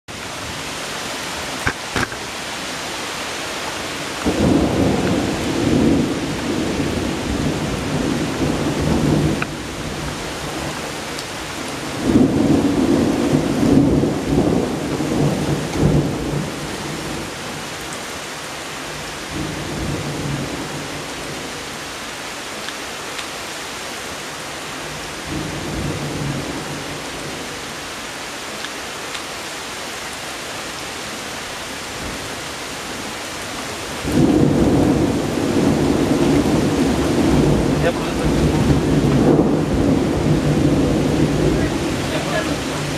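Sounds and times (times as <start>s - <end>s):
steady rain falling: 0.1s - 42.9s
thunder rumbling: 4.2s - 17.6s, 25.2s - 27.4s, 33.9s - 42.9s.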